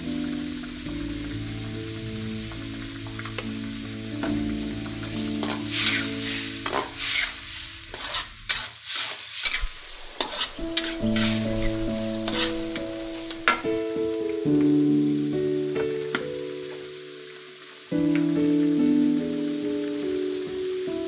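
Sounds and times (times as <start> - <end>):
food sizzling in a pan: 0.0 - 21.0
spatula scraping pan: 5.0 - 13.6.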